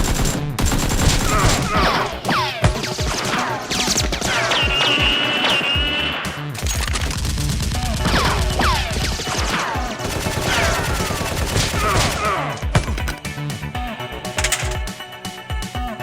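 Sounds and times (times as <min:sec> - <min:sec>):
automatic gunfire: 0:10.0 - 0:13.2.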